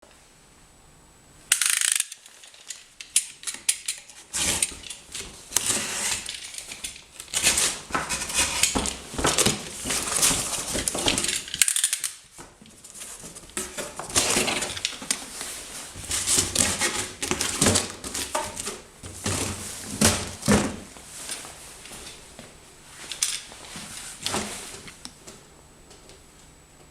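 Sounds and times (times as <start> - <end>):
clicks and knocks of parts: 1.5 - 12.8.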